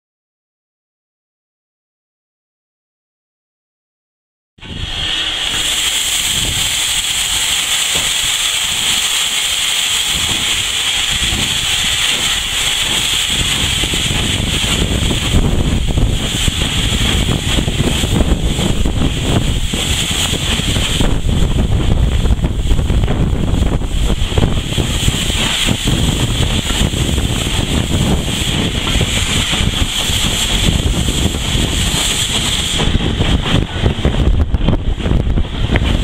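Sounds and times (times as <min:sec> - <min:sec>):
steam locomotive hissing: 0:04.6 - 0:36.0
rough low rumble: 0:10.1 - 0:36.0.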